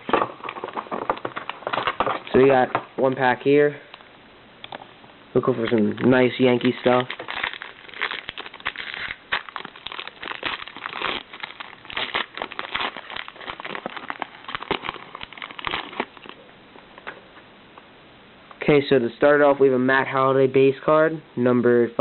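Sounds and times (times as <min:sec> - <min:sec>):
cards rustling: 0:00.0 - 0:03.4, 0:05.4 - 0:16.4
card pack wrapper tearing: 0:05.4 - 0:16.4.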